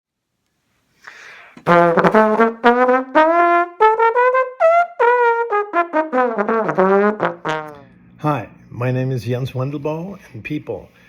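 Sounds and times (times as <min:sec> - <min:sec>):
trombone melody: 0:01.6 - 0:07.9.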